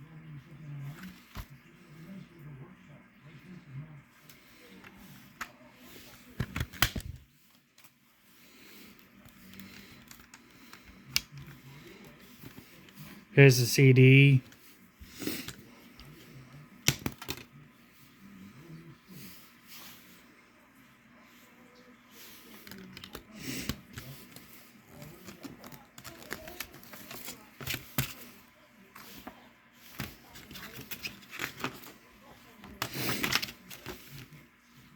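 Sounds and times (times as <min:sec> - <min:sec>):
plastic case rustling and clicking: 0:06.2 - 0:07.2, 0:09.2 - 0:11.6, 0:16.8 - 0:17.5, 0:22.6 - 0:28.3, 0:29.9 - 0:32.0, 0:32.6 - 0:34.3.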